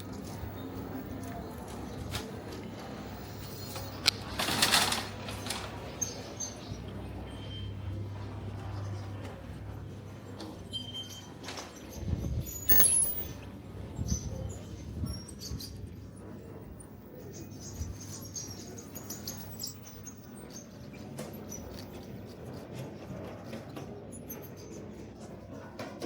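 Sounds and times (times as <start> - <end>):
low street rumble: 0.0 - 12.4
high chirps squeaks and clicks: 12.7 - 13.3.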